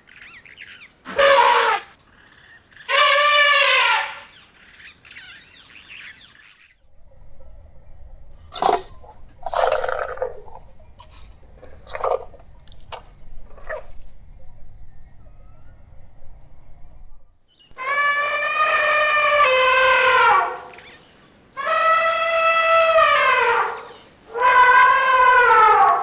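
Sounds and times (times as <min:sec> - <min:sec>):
elephant trumpeting: 0:01.1 - 0:02.0, 0:02.9 - 0:04.3, 0:17.8 - 0:20.9, 0:21.6 - 0:26.0.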